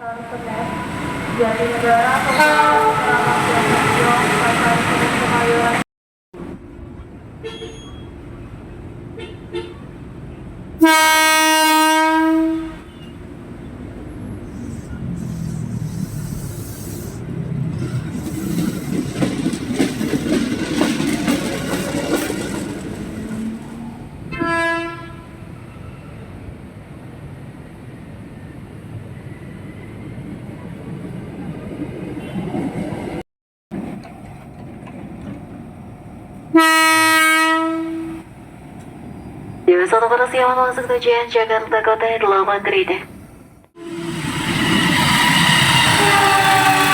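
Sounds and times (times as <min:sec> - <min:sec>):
train horn: 0:02.0 - 0:04.3, 0:10.8 - 0:13.1, 0:24.3 - 0:25.5, 0:36.5 - 0:38.2, 0:43.8 - 0:44.6, 0:45.2 - 0:46.9
train wheels rumbling on rail: 0:12.7 - 0:39.6, 0:43.2 - 0:46.9.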